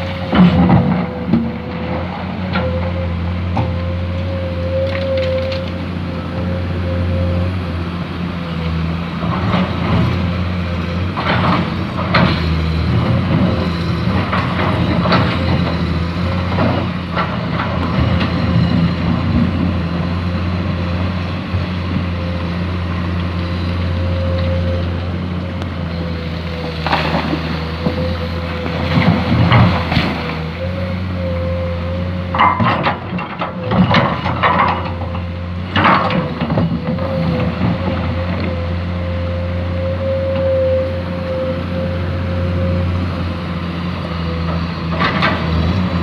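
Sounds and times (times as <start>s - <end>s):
diesel engine running: 0.0s - 46.0s
bucket scraping and clunking in sand: 26.1s - 30.5s.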